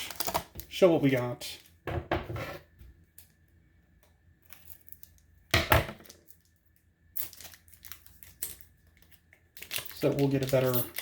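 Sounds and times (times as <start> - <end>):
foil wrapper crinkling and tearing: 0.0 - 0.8, 7.2 - 11.0.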